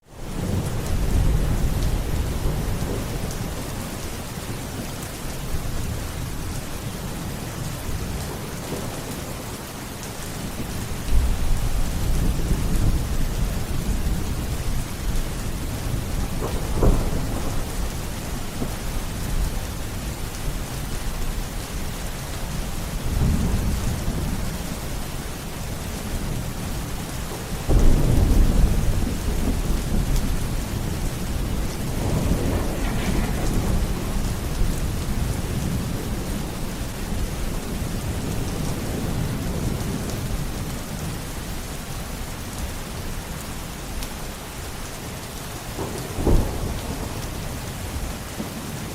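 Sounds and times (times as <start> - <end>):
steady rain falling: 0.0 - 48.9
rolling thunder: 0.1 - 4.9, 10.5 - 20.7, 22.4 - 41.2, 45.7 - 48.8
sharp thunder crack: 27.7 - 36.1.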